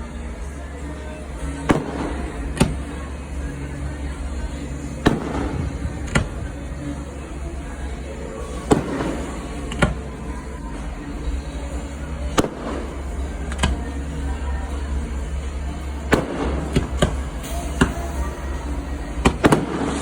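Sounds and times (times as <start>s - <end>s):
low rumble: 0.0s - 9.7s
fireworks bangs: 1.2s - 7.0s, 8.4s - 10.2s, 12.3s - 14.0s, 16.0s - 20.0s.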